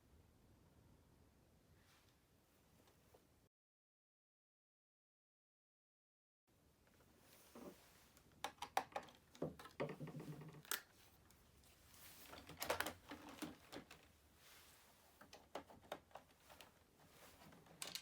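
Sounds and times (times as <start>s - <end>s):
hard plastic parts rattling: 12.3s - 14.0s, 17.4s - 18.0s.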